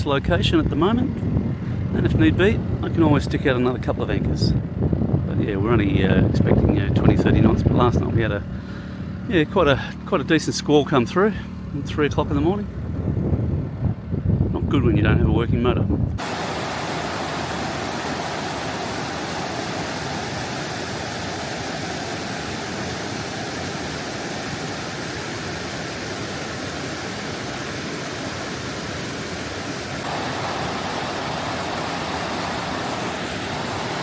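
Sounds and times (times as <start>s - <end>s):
waterfall rushing: 16.2s - 34.0s.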